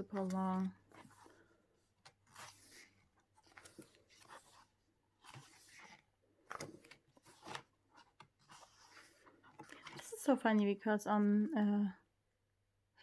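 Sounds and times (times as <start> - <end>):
photobook pages turning: 0.0 - 10.3.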